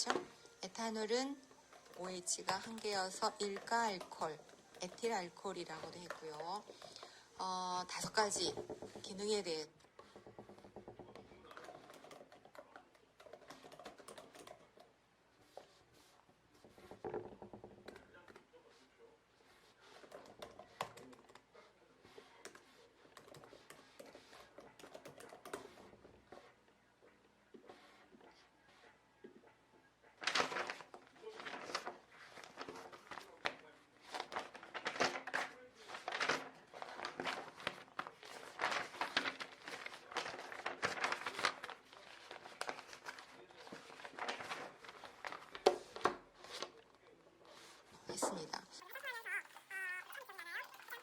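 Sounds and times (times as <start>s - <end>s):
rustling and clicking handling noise: 0.0s - 18.6s, 30.2s - 47.2s
typing on computer keyboard: 10.5s - 14.9s, 22.5s - 25.9s.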